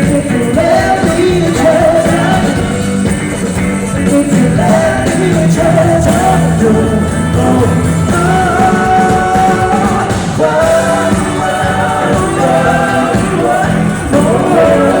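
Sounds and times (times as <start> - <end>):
live pop-rock band: 0.0 - 15.0
person singing long held notes: 4.1 - 15.0.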